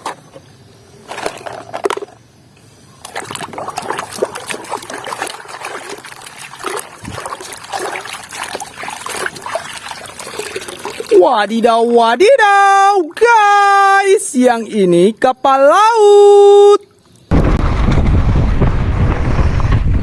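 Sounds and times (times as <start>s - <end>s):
water sloshing and splashing: 3.0s - 13.3s, 16.8s - 17.3s.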